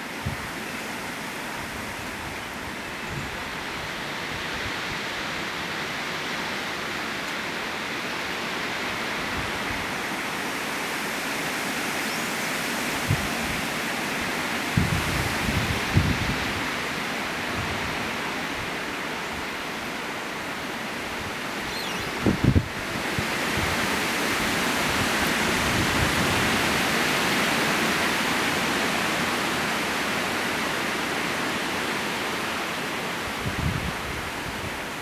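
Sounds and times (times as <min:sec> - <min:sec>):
wind buffeting microphone: 0:21.2 - 0:26.8
strong wind rushing: 0:21.6 - 0:23.8.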